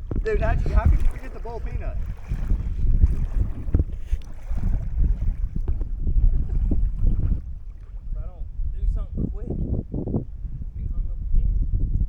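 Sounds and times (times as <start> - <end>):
paddle in water: 0.0 - 8.7
wind rumble on microphone: 0.0 - 12.0.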